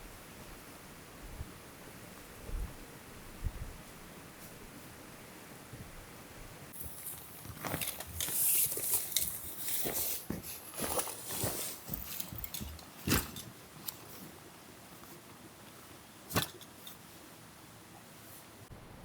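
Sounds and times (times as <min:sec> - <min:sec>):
rustling and crunching: 0:06.7 - 0:14.4.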